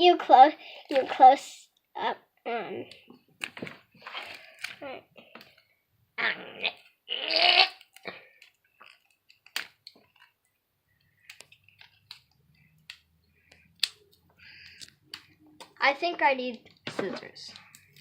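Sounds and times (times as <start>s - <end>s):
hands clicking at packaging: 7.8s - 10.4s, 11.2s - 15.8s.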